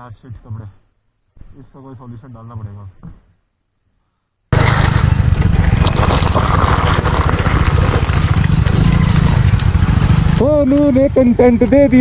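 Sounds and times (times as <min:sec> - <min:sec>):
motorcycle engine rumbling: 0:04.5 - 0:12.0.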